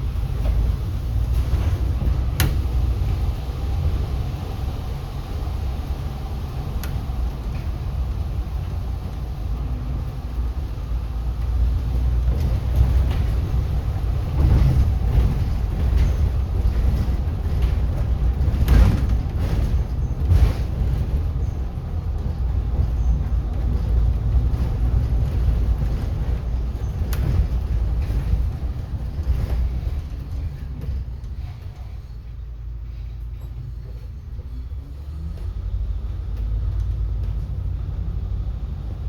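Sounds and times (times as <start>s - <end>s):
bus body rattles: 0.0s - 39.0s
bus engine and road rumble: 0.0s - 39.0s.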